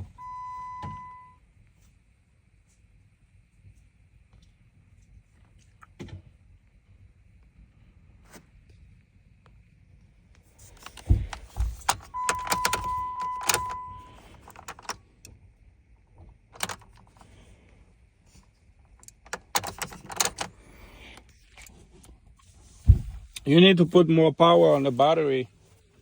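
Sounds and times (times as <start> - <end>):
car keys jangling: 10.6 - 15.0, 16.6 - 17.3, 18.9 - 20.7
electronic beep: 12.2 - 14.1.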